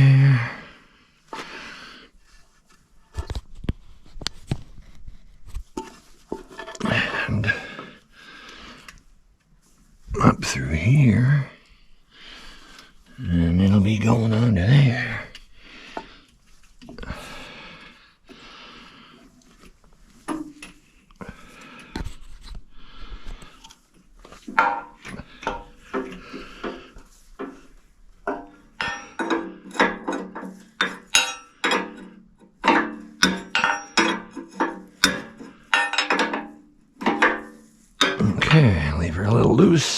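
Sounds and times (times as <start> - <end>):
hose rubbing and sliding on metal: 23.2 - 39.8.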